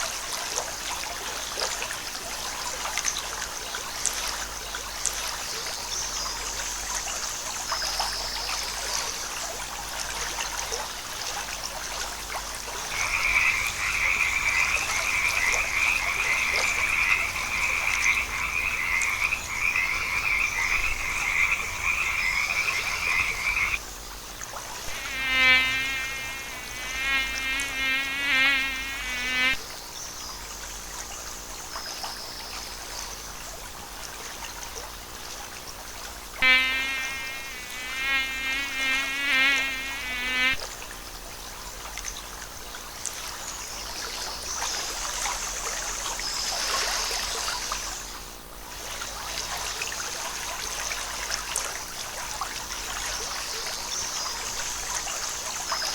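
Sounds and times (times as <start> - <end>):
insects humming: 0.0 - 35.3, 36.1 - 41.9
frogs croaking: 10.8 - 33.5, 36.4 - 40.7
frogs trilling chorus: 12.8 - 23.8.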